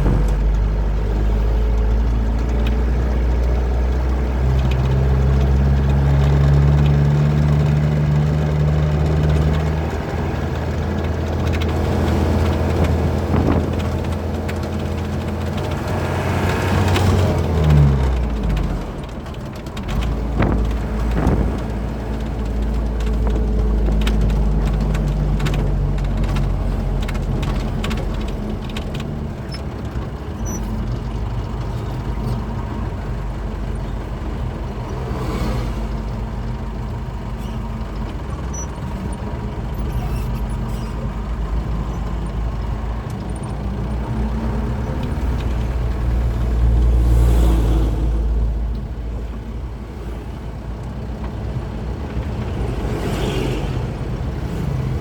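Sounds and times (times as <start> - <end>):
rattles: 0.0 - 35.0
diesel truck engine running: 0.0 - 55.0
road noise: 0.0 - 55.0.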